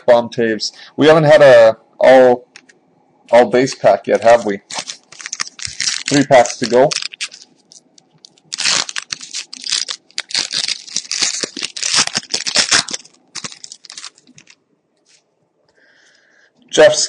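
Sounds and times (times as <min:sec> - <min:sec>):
wrapper tearing and crinkling: 0:04.3 - 0:14.6.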